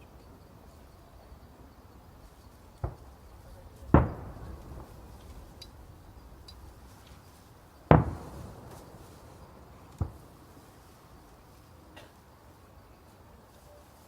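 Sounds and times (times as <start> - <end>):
faint fireworks crackles: 0.0 - 14.0
fireworks bangs: 2.6 - 11.6.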